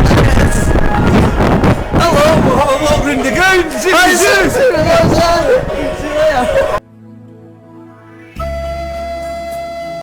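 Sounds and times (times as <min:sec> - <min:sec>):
soft background music chords: 0:00.4 - 0:10.0
long held high note: 0:08.4 - 0:10.0.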